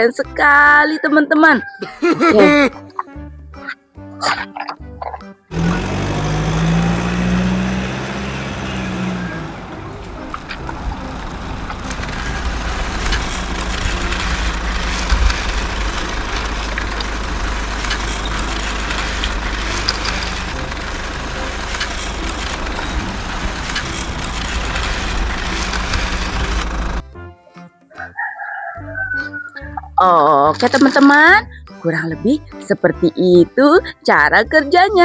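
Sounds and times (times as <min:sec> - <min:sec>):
truck engine rumble: 0:04.2 - 0:27.2
rattling: 0:05.5 - 0:27.0.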